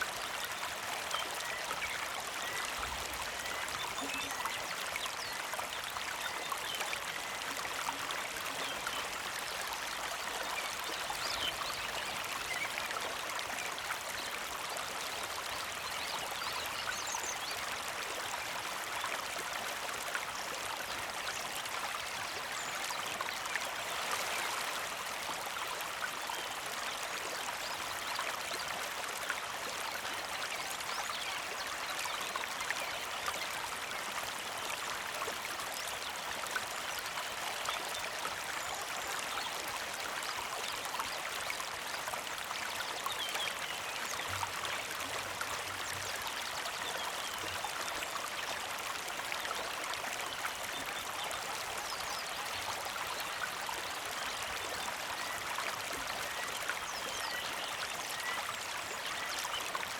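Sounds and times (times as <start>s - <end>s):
creek flowing over stones: 0.0s - 59.9s.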